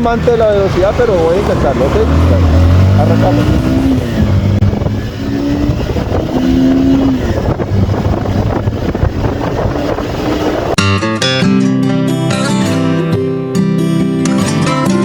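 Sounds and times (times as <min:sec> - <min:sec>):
motorcycle engine accelerating: 0:00.0 - 0:10.8
wind noise: 0:00.0 - 0:10.8.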